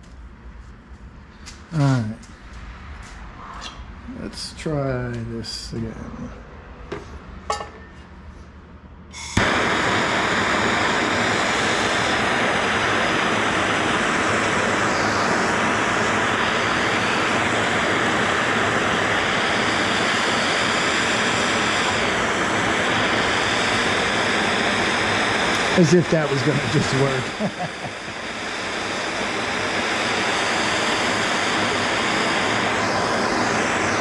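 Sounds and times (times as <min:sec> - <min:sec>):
gas torch hissing: 0:01.7 - 0:02.2, 0:09.1 - 0:34.0.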